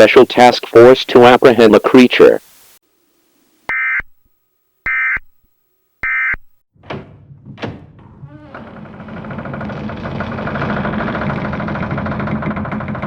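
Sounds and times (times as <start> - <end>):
data-tone bursts: 4.9 - 5.3, 6.0 - 6.5
low droning noise: 7.2 - 13.0.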